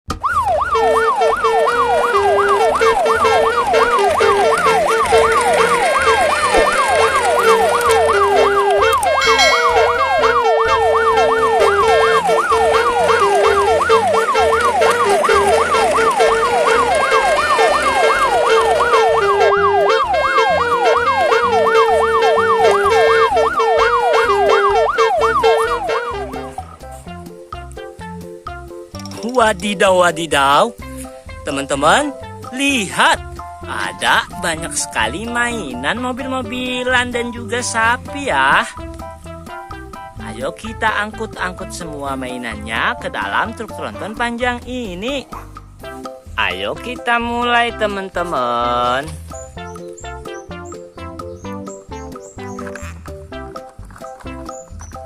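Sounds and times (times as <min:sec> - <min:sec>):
background music with bass line: 0:00.1 - 0:55.0
siren wailing rapidly: 0:00.2 - 0:26.6.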